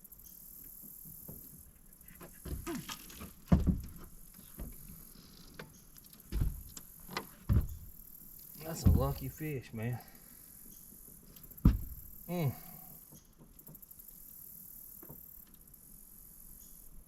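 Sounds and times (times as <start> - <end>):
dull thumps and knocks: 2.2 - 5.0, 6.3 - 9.5, 11.6 - 12.2.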